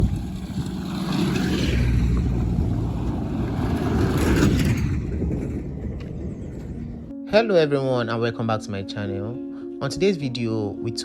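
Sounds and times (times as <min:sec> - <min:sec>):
vehicle engine rumbling: 0:00.0 - 0:07.1.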